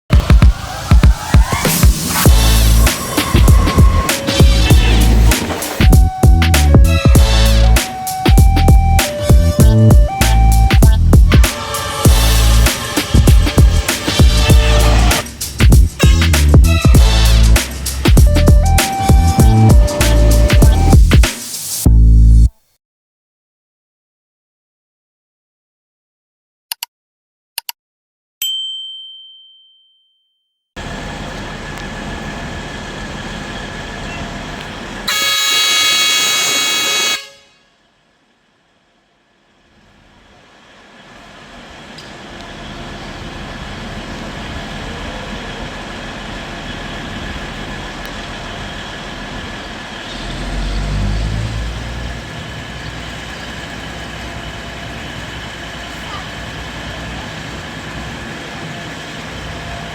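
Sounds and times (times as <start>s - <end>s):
station ambience: 0.1s - 22.5s, 30.8s - 37.6s, 39.6s - 59.9s
low engine rumble: 0.5s - 21.2s, 30.8s - 35.1s, 39.7s - 59.9s
diesel locomotive horn blast: 2.3s - 10.7s, 11.3s - 20.9s, 33.4s - 37.9s, 46.6s - 53.6s.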